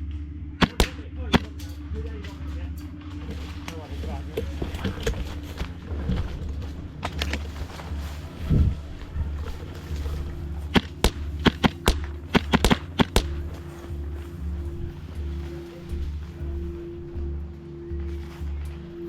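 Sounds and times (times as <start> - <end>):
airsoft gun shots: 0.6 - 1.6, 10.7 - 13.3.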